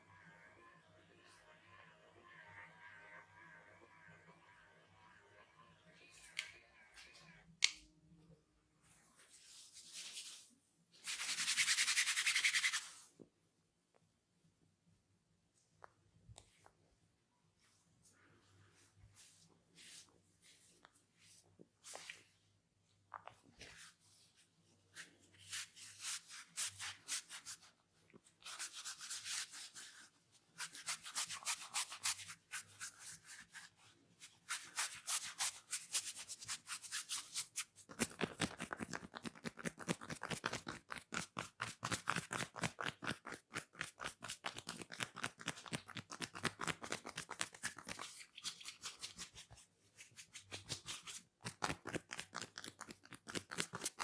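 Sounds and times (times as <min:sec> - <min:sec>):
hands crackling through hair: 0:34.5 - 0:54.0.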